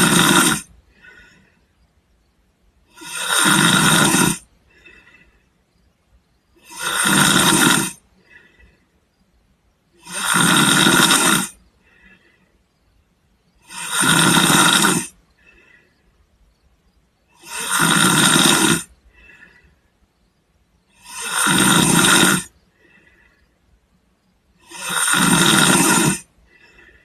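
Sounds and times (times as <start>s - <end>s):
person snoring loudly: 0.0s - 1.3s, 2.9s - 5.3s, 6.6s - 8.6s, 10.0s - 12.3s, 13.6s - 15.8s, 17.3s - 19.6s, 20.9s - 23.3s, 24.6s - 27.0s
soft short breath: 26.4s - 27.0s.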